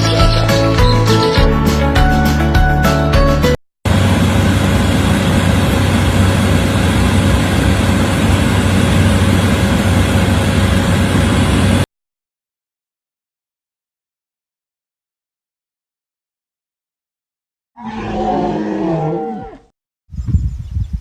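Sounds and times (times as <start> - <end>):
engine running: 3.9 - 11.8.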